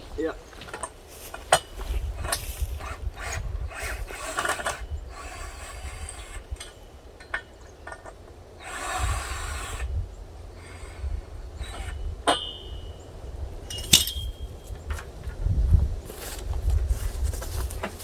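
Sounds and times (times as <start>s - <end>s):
wind rumble on microphone: 0.0s - 6.7s, 8.8s - 18.0s
metal hardware scraping and clicking: 13.7s - 14.7s.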